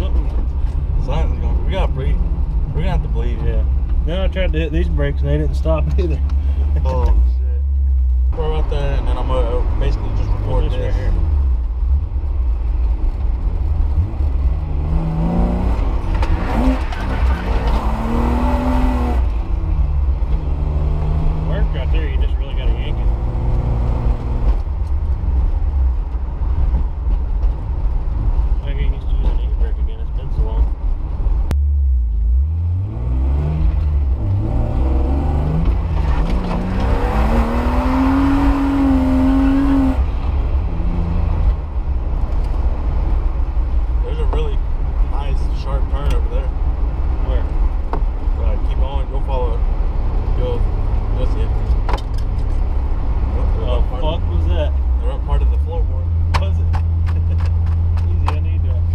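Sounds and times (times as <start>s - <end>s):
car engine revving: 0.0s - 58.9s
heavy low rumble: 0.0s - 58.9s.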